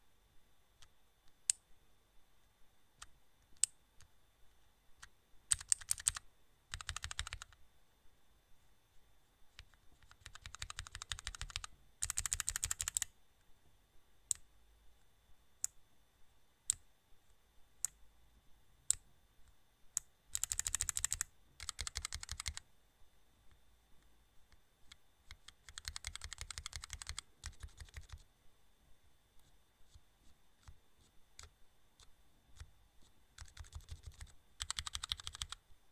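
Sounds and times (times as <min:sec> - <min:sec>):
rapid clicking: 0:09.6 - 0:13.1.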